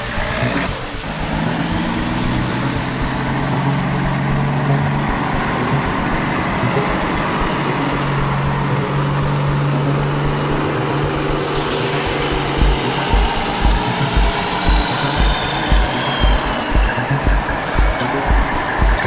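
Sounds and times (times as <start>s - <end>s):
truck engine humming: 0.0s - 19.0s.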